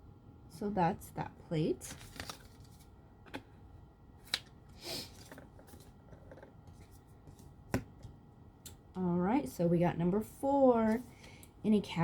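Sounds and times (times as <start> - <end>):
packaging rustle: 1.9 - 2.9.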